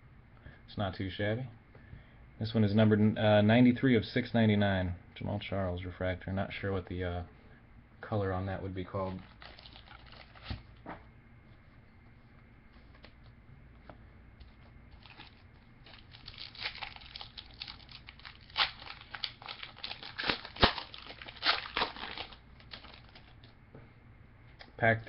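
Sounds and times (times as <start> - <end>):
wrapper handling: 9.0 - 10.7, 14.4 - 23.5
wrapper tearing and crackling: 9.1 - 10.6, 15.0 - 23.4.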